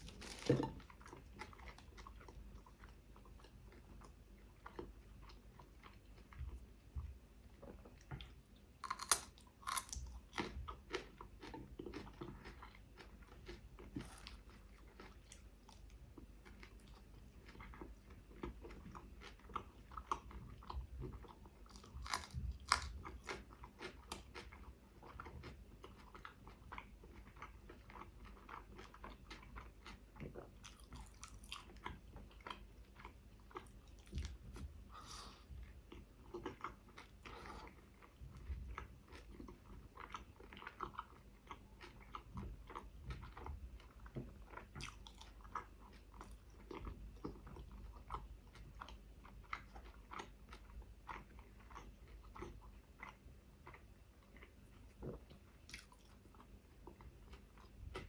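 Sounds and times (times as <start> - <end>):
chewing and biting food: 0.0 - 58.0.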